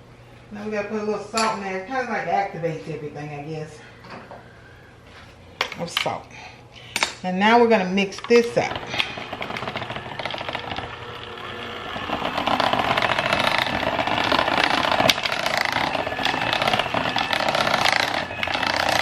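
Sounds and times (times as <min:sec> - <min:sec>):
electric hand mixer running: 0:08.4 - 0:19.0.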